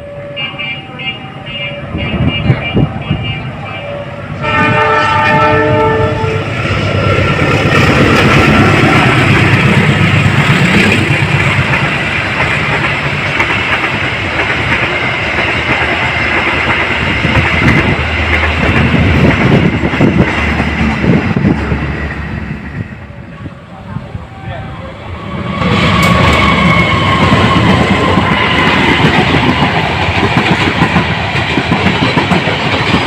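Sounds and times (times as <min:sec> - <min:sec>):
locomotive horn: 0:00.0 - 0:06.6.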